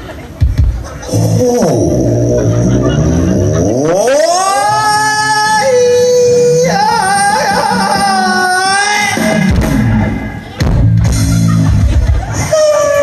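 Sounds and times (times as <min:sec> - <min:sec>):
drums and band music: 0:00.0 - 0:03.7, 0:06.7 - 0:13.0
high voice drawn-out cry: 0:01.0 - 0:09.5, 0:12.4 - 0:13.0.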